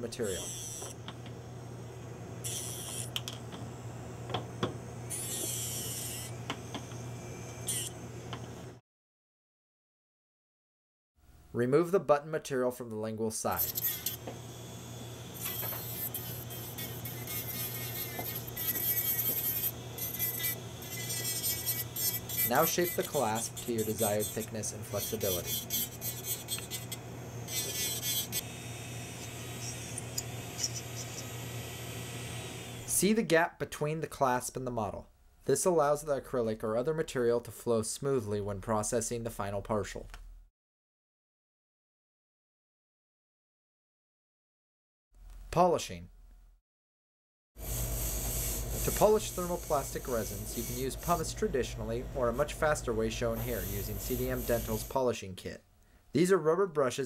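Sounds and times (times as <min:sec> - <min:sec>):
steady low hum: 0:13.8 - 0:33.0, 0:47.6 - 0:55.0
high-pitched grinding: 0:15.4 - 0:31.5, 0:47.6 - 0:54.9.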